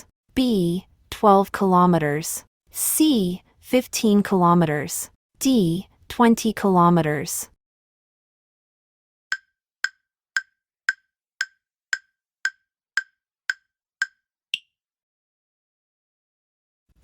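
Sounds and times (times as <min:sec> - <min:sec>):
countdown timer ticks: 0:09.3 - 0:14.7.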